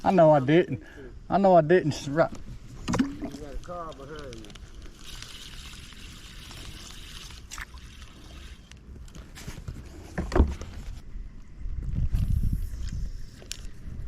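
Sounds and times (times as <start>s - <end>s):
water trickling: 2.8s - 8.8s
handling noises in a kayak: 6.5s - 11.1s.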